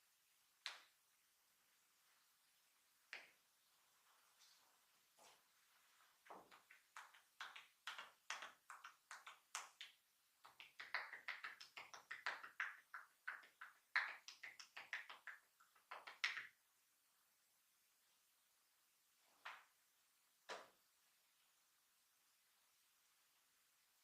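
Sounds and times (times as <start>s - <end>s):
hands slapping on skin: 6.2s - 16.6s.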